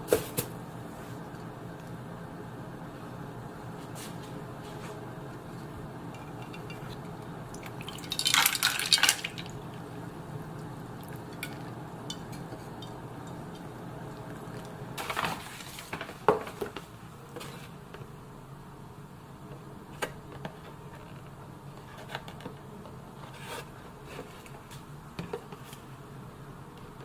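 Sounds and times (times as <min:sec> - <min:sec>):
steady low hum: 0:00.0 - 0:27.0
dishes and utensils clattering: 0:06.1 - 0:09.5.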